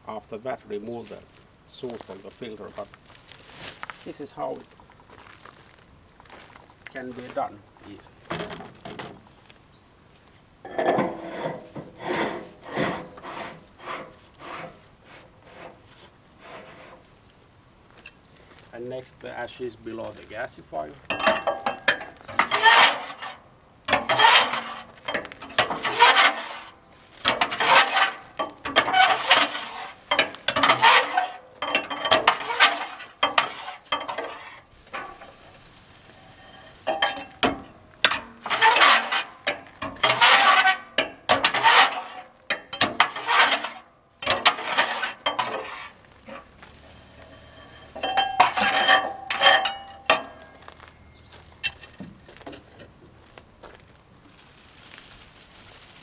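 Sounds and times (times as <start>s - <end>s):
metal tool scraping ash: 10.6s - 17.2s, 20.9s - 52.1s.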